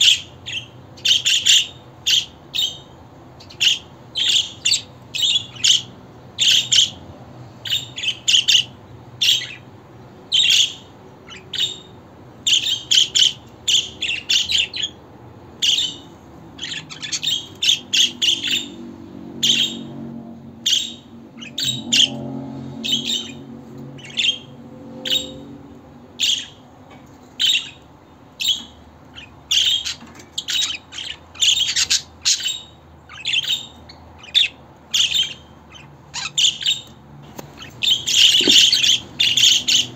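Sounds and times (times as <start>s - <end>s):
budgerigar chirping: 0.0s - 7.0s, 7.6s - 9.7s, 10.3s - 15.0s, 15.6s - 19.9s, 20.6s - 22.2s, 22.8s - 24.5s, 25.1s - 25.4s, 26.2s - 26.6s, 27.4s - 27.8s, 28.4s - 39.9s.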